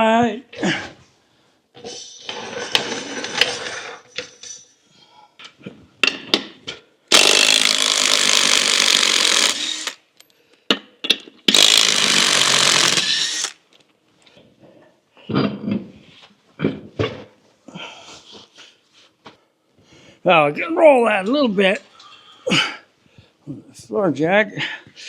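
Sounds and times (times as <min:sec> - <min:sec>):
impact wrench spinning: 0:07.1 - 0:10.2, 0:11.5 - 0:13.6.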